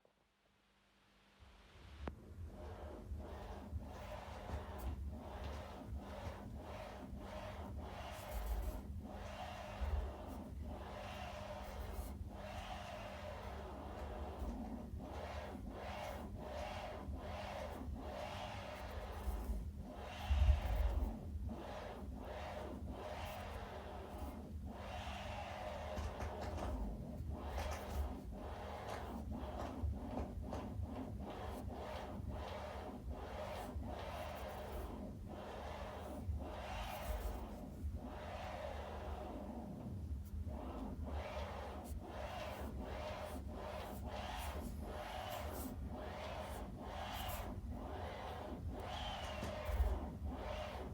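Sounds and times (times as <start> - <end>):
vinyl surface noise and crackle: 24.8 - 50.9.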